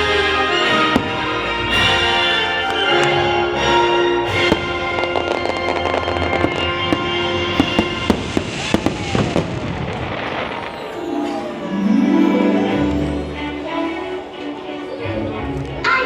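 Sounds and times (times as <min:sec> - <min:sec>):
fireworks bangs: 0:00.7 - 0:03.1, 0:04.3 - 0:11.4.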